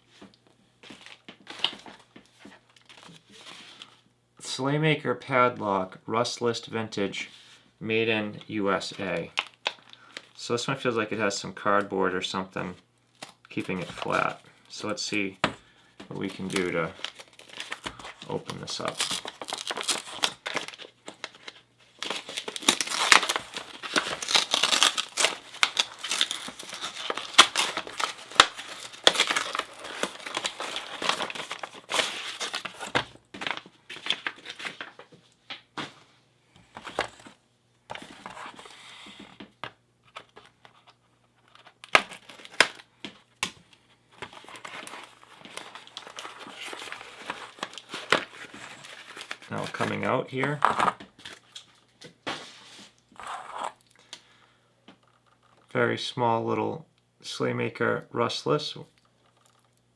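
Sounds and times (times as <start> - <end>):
paper and cardboard crinkling: 16.1 - 35.2, 36.7 - 39.4, 40.0 - 42.9, 44.2 - 53.8.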